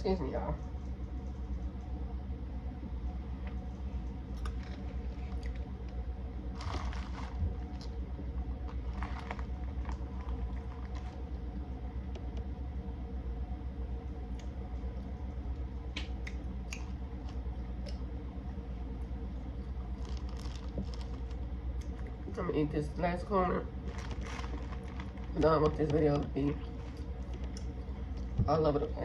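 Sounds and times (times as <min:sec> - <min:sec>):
steady low hum: 0:00.0 - 0:29.0.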